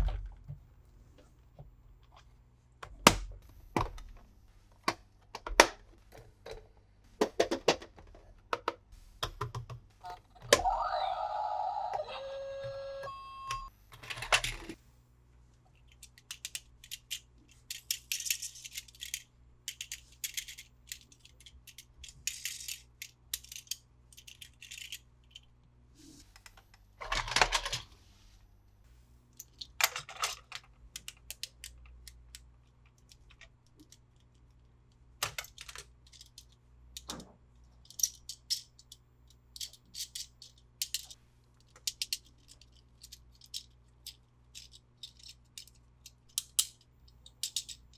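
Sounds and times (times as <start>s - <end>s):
plastic toy parts clicking: 14.0s - 14.8s, 15.8s - 25.5s, 26.4s - 27.8s, 29.4s - 34.6s, 35.2s - 47.9s.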